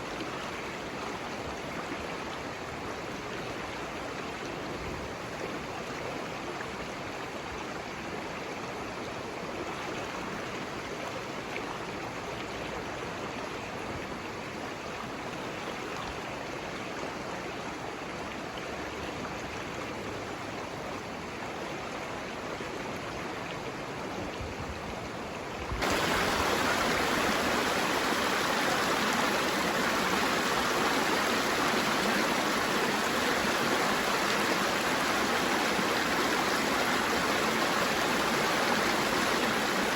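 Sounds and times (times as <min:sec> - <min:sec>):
water rushing: 0:25.1 - 0:39.9.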